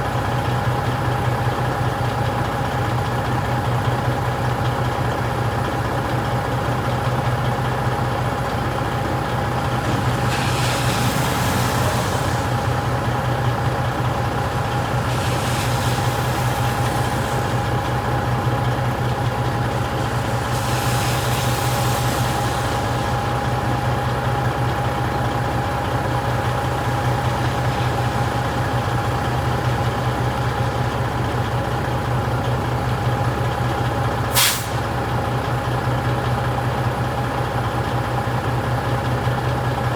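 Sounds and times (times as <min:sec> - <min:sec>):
truck engine idling: 0:00.0 - 0:39.9
short hisses: 0:34.3 - 0:34.9.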